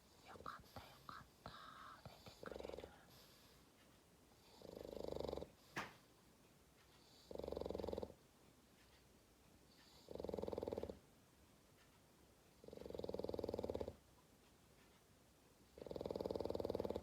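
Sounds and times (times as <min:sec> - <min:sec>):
dog snoring: 0:00.1 - 0:03.6, 0:04.4 - 0:05.9, 0:07.0 - 0:08.2, 0:09.7 - 0:11.0, 0:12.6 - 0:14.0, 0:15.8 - 0:17.0.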